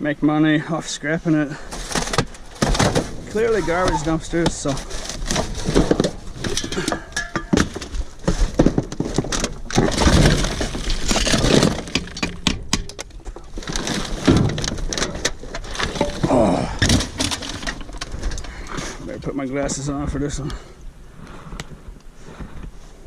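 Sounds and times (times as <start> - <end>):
scrap metal knocking and clanking: 1.8 - 18.5.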